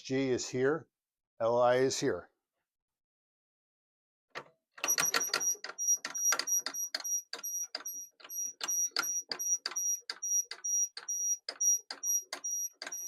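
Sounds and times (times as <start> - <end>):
rapid sharp clicks: 4.8 - 13.0
high electronic beep: 4.9 - 13.0.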